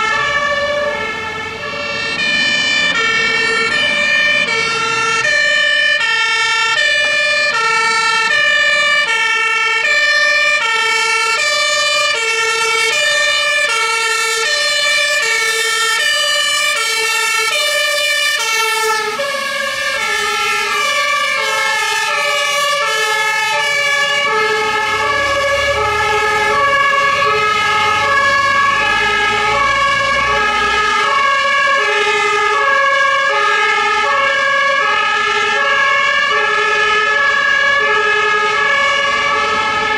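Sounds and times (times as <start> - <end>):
vehicle engine rumbling past: 0.0 - 9.3, 17.3 - 31.7
two-tone sirens: 0.0 - 39.9.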